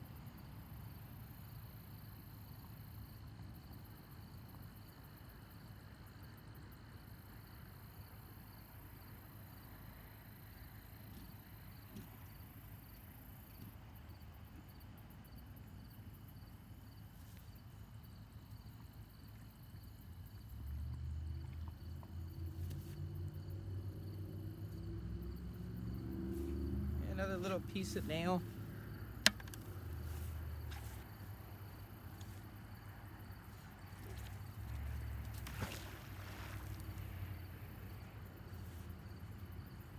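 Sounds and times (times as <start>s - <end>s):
insects chirping: 0.1s - 39.9s
low outdoor rumble: 17.1s - 39.9s
vehicle engine: 20.5s - 39.9s.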